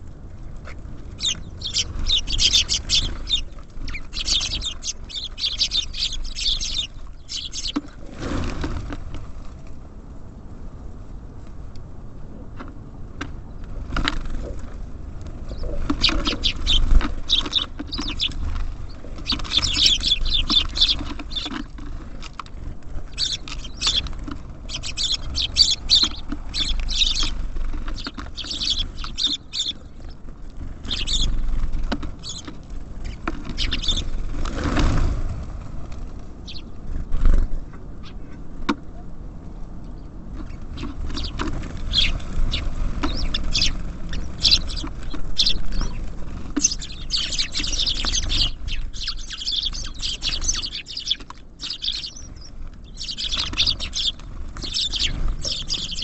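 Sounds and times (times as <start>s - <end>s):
small songbirds chirping: 0.8s - 8.0s, 14.4s - 34.4s, 36.4s - 37.0s, 39.8s - 56.0s.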